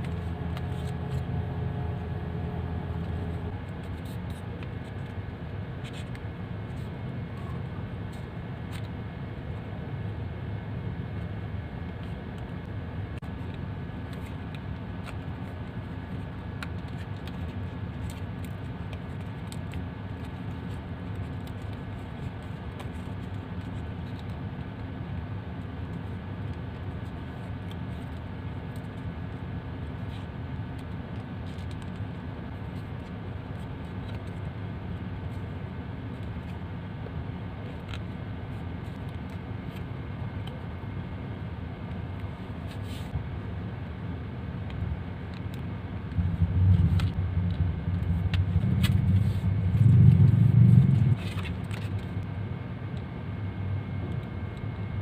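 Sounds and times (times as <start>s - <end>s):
paper being folded and creased: 0.0s - 1.9s, 48.3s - 52.2s
low background hum: 0.0s - 55.0s.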